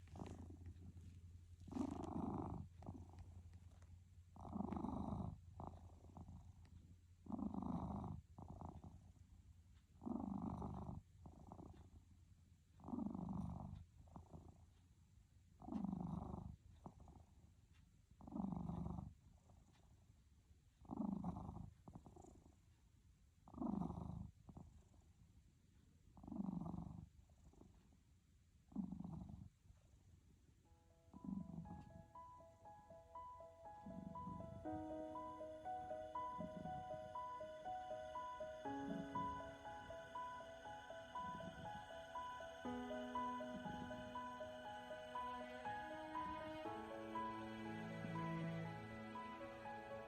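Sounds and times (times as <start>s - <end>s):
cat snoring: 0.0s - 12.1s, 12.7s - 14.8s, 15.6s - 17.5s, 18.2s - 20.1s, 20.7s - 22.8s, 23.4s - 28.0s, 28.6s - 30.4s, 31.0s - 50.0s
cat breathing quietly: 33.8s - 34.6s.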